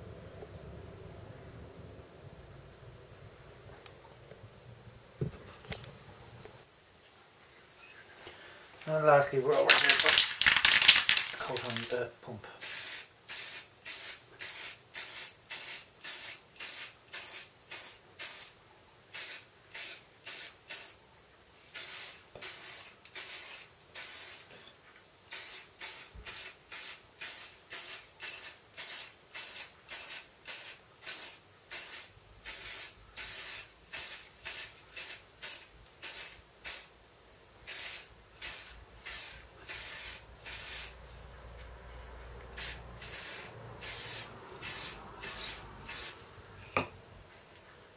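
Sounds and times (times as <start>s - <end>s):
aerosol spray can bursts: 12.6s - 21.0s, 21.7s - 24.5s, 25.3s - 36.9s, 37.6s - 41.0s, 42.6s - 46.2s.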